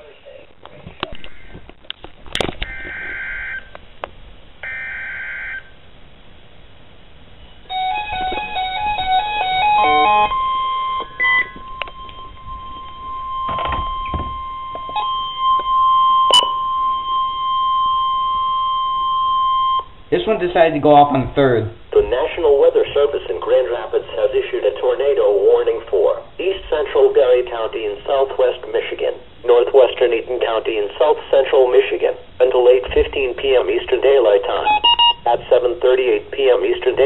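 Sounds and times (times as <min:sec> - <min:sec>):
steady warning alarm tone: 0:02.6 - 0:03.8, 0:04.6 - 0:05.8, 0:07.6 - 0:20.9, 0:21.8 - 0:37.0
screechy digital header tone: 0:02.7 - 0:03.7, 0:04.6 - 0:05.7, 0:09.2 - 0:20.0
stepping beeps: 0:07.7 - 0:20.0, 0:34.6 - 0:35.4.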